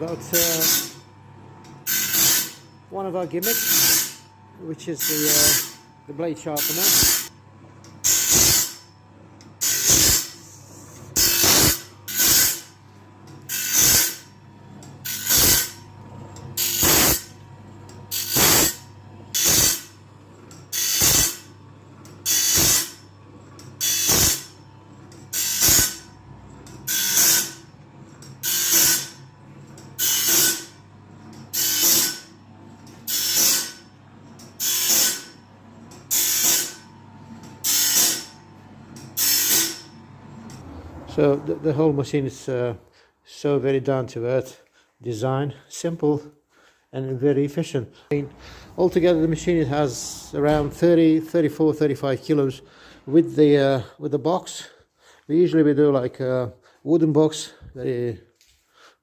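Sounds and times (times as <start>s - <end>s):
motor humming: 5.2s - 41.9s
grinding wheel hissing on teeth: 6.6s - 7.3s, 8.0s - 8.8s, 9.6s - 12.7s, 13.5s - 14.3s, 15.0s - 15.8s, 16.6s - 17.4s, 18.1s - 20.0s, 20.7s - 21.5s, 22.2s - 23.0s, 23.8s - 24.6s, 25.3s - 26.1s, 26.8s - 27.6s, 28.4s - 29.2s, 34.6s - 35.4s, 39.2s - 39.9s.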